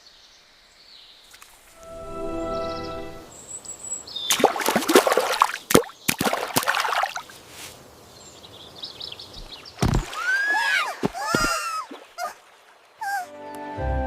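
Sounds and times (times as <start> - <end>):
bird chirping: 0.0 - 4.6, 8.1 - 9.9
rustling noise: 7.3 - 7.9.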